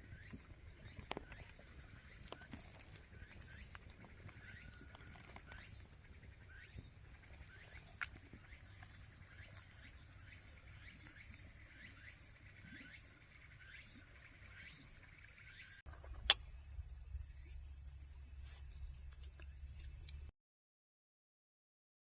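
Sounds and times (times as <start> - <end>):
campfire crackling and popping: 0.2 - 9.9
steady high hiss: 15.9 - 20.3
sharp click: 16.0 - 16.5.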